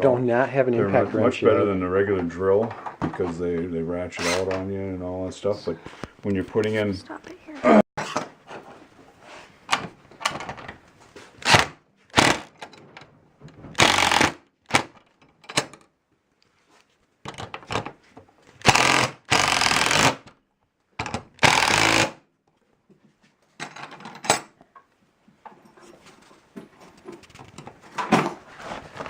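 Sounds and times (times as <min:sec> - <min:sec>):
power drill driving screws: 0:11.4 - 0:12.6, 0:13.8 - 0:15.0, 0:18.6 - 0:20.3, 0:21.4 - 0:22.2.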